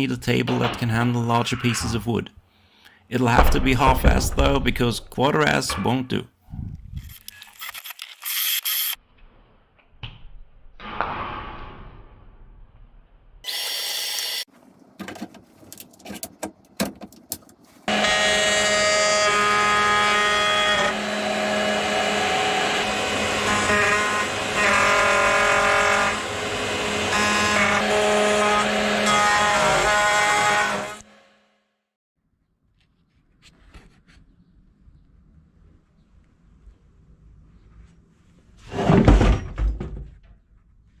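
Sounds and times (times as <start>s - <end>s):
knocks: 3.4s - 5.9s
power tool cutting wood: 13.5s - 14.5s, 17.9s - 31.4s.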